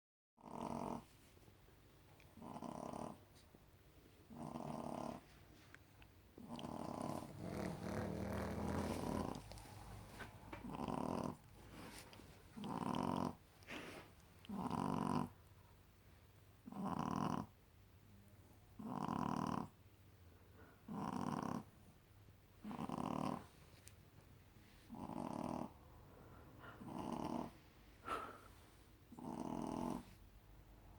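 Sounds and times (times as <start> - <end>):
puppy snoring: 0.4 - 1.1, 2.4 - 3.2, 4.3 - 5.3, 6.4 - 15.4, 16.6 - 17.6, 18.8 - 19.8, 20.8 - 21.7, 22.6 - 23.5, 24.9 - 25.8, 26.6 - 28.4, 29.1 - 30.2.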